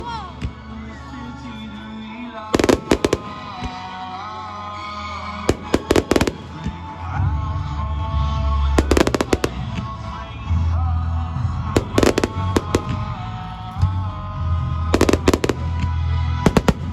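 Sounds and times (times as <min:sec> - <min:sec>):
music: 0:00.0 - 0:16.9
fireworks bursting: 0:02.5 - 0:04.0, 0:05.4 - 0:07.0, 0:08.7 - 0:10.2, 0:11.6 - 0:13.9, 0:14.9 - 0:16.9.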